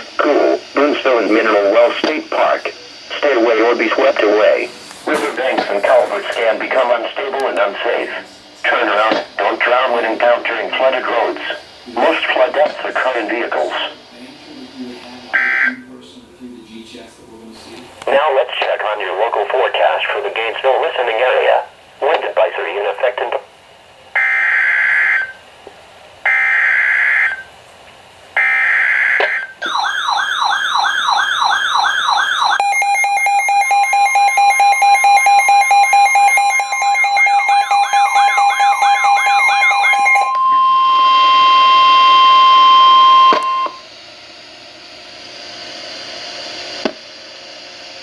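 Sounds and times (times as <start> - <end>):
radio static hiss: 0.0 - 24.0, 41.2 - 48.0
fast-pulsing alarm beep: 15.4 - 15.9, 28.4 - 43.8
warbling siren-like tone: 28.5 - 43.8
data bursts: 29.3 - 43.8
steady single-pitch tone: 29.6 - 43.9.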